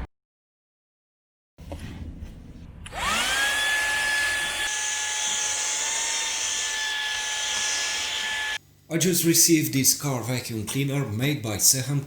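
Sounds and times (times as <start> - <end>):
handheld vacuum cleaner whine: 2.9 - 8.6.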